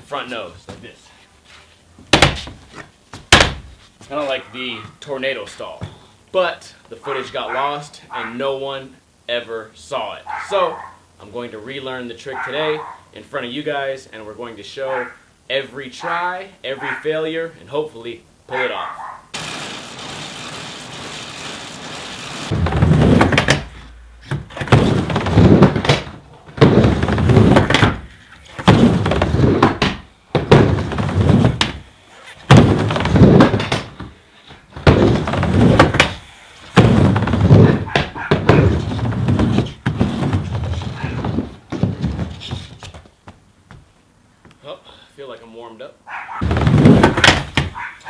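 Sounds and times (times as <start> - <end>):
skateboard thunks on coping: 2.1 - 3.8, 19.4 - 43.0, 46.4 - 47.8
skateboard wheels rumbling on ramp: 19.4 - 43.1, 46.4 - 47.8.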